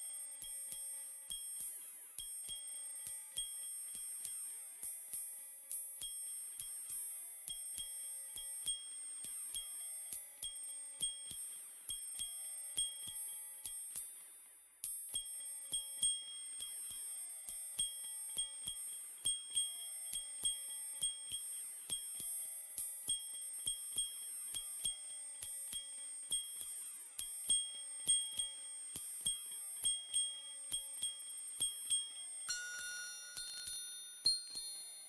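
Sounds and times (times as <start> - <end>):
high-pitched electronic tone: 31.6 - 35.0.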